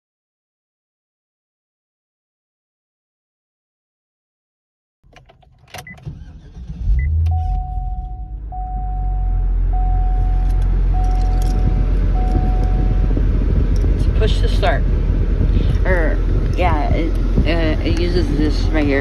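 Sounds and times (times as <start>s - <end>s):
engine starting and idling: 5.1s - 13.1s
car warning chime: 5.7s - 13.9s
clicks: 9.8s - 13.1s.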